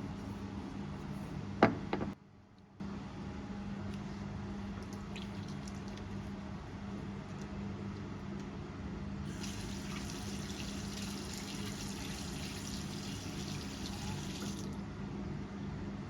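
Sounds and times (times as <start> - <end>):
tap water running into sink: 9.3 - 14.8.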